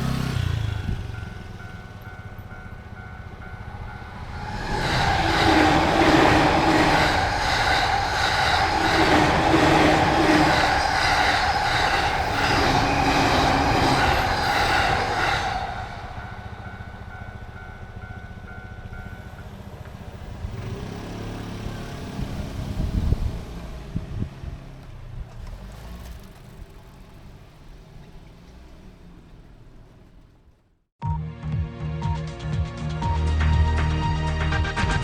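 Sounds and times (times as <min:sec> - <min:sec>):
train wheels clattering on rails: 0:00.0 - 0:22.4
level crossing bell dinging: 0:01.0 - 0:04.3.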